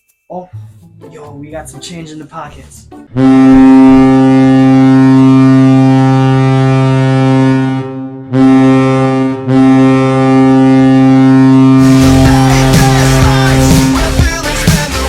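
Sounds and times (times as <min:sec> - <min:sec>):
low-pitched goal horn blast: 0:03.1 - 0:14.0.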